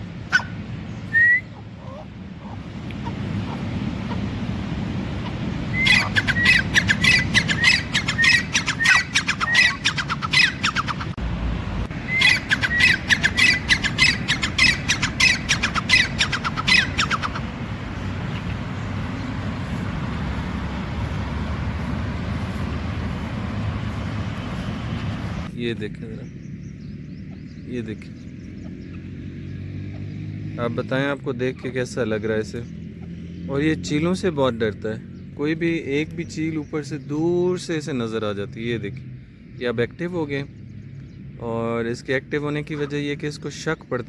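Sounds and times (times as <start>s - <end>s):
francolin harsh calls: 0.3s - 4.4s, 5.1s - 11.2s, 11.9s - 25.5s.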